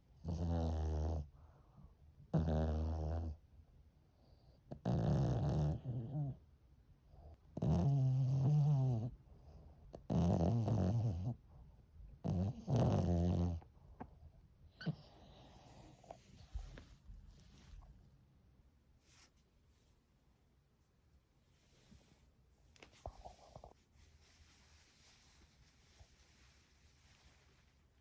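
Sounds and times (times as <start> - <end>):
dog snoring: 0.2 - 1.3, 2.3 - 3.4, 4.2 - 6.4, 7.1 - 11.4, 12.2 - 13.7, 14.8 - 16.3.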